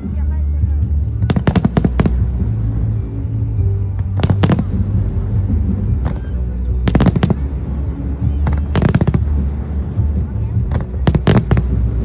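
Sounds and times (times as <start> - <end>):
steady low rumble: 0.0 - 12.0
fireworks bangs: 0.9 - 3.0, 4.0 - 12.0.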